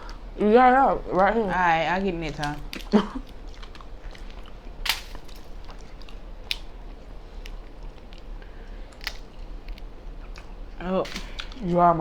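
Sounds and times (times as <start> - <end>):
crab shells cracking: 2.3 - 10.5
shell snapping: 4.8 - 6.7, 9.0 - 9.8.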